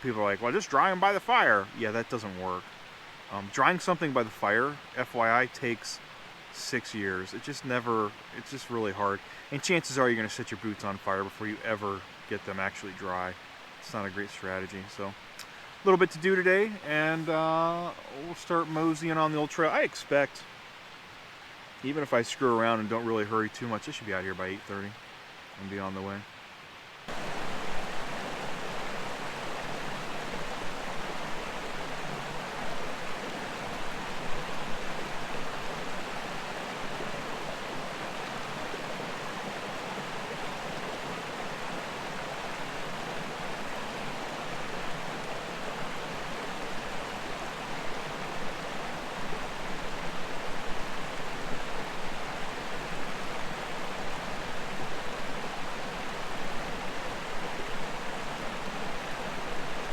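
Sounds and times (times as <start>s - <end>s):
creek and waterfall rushing: 0.0s - 59.9s.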